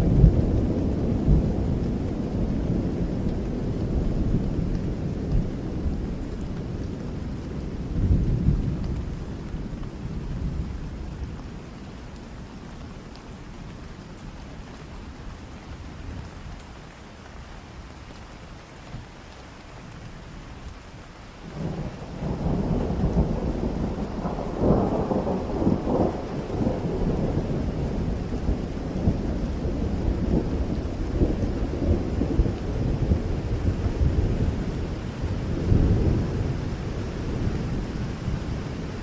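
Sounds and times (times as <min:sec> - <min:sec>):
steady rain: 0:00.0 - 0:39.0
rolling thunder: 0:21.5 - 0:39.0.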